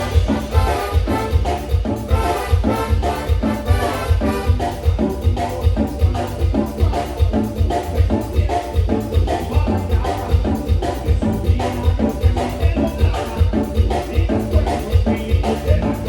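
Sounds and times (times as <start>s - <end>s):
latin dance band with horns: 0.0s - 16.0s.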